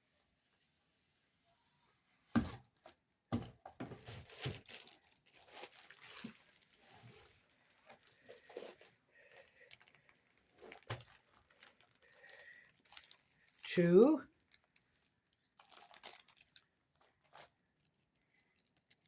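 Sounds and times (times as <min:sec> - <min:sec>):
plastic packaging crinkling: 0:03.8 - 0:19.0.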